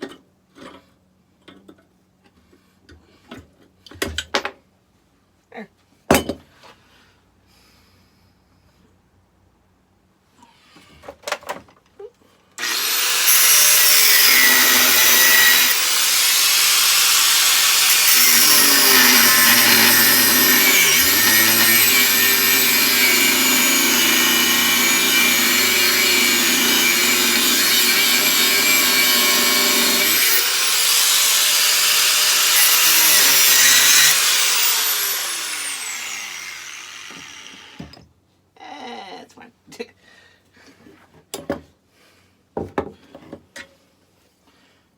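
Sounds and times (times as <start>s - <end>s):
electric grinder grinding steel: 12.6s - 37.9s.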